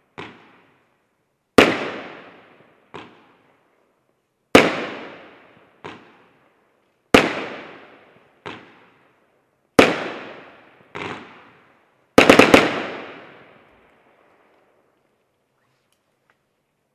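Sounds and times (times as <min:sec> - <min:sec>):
fireworks bangs with echo: 0:00.1 - 0:00.7, 0:01.6 - 0:03.4, 0:04.5 - 0:06.4, 0:07.1 - 0:09.1, 0:09.7 - 0:14.2.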